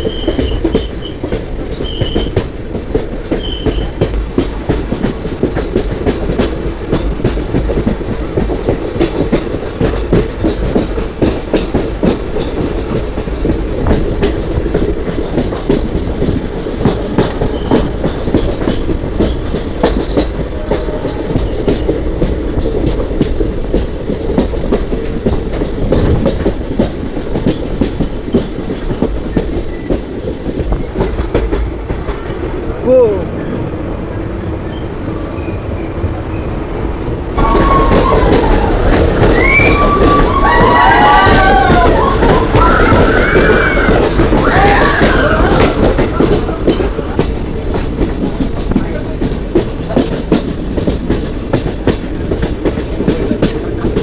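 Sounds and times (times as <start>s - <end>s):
wheels clacking over rail joints: 0.0s - 34.9s, 35.7s - 54.0s
train rumbling along track: 0.0s - 54.0s.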